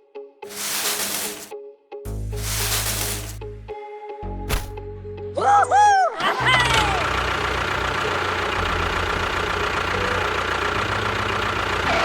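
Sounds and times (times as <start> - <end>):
engine running: 0.5 - 1.5, 2.4 - 3.4, 6.6 - 12.0.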